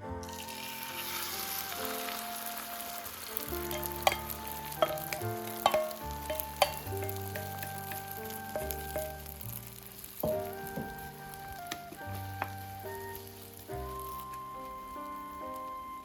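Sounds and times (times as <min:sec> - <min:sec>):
background music: 0:00.0 - 0:16.0
food sizzling in a pan: 0:00.2 - 0:16.0.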